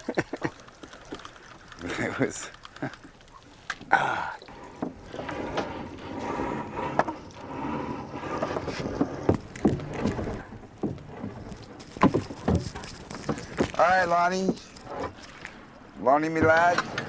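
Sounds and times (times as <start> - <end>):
knocks and clatters on boat: 4.5 - 17.0.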